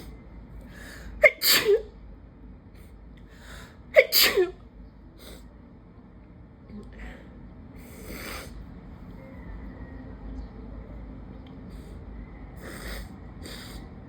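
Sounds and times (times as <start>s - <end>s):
person sneezing: 1.2s - 1.8s, 4.0s - 4.4s.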